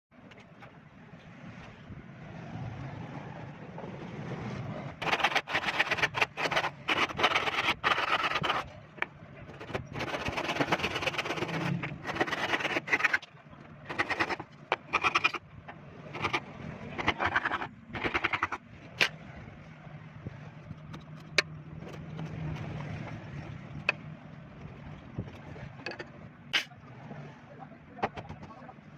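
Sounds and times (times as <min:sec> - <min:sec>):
low steady hum: 0:00.2 - 0:28.9
hand saw rasping on wood: 0:05.0 - 0:08.6, 0:10.0 - 0:13.2.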